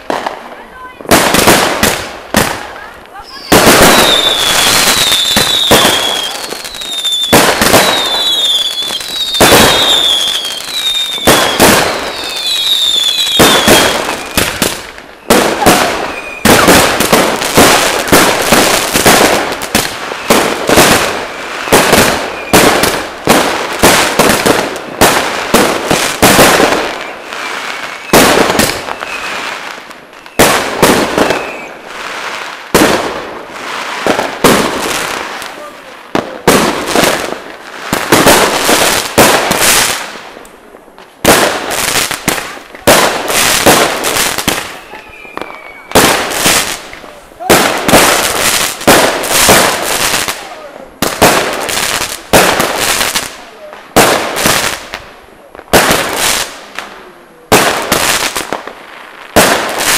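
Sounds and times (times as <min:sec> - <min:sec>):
fireworks bangs: 0:00.0 - 0:59.9
firecracker pops: 0:01.1 - 0:27.1, 0:27.7 - 0:31.7, 0:34.0 - 0:59.9
short high whistles: 0:44.8 - 0:46.0.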